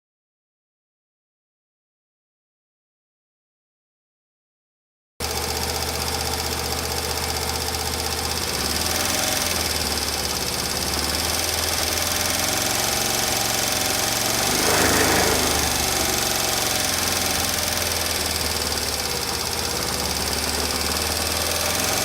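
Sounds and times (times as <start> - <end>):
engine clicking noise: 5.2 - 22.0
motorcycle engine running: 5.2 - 22.0.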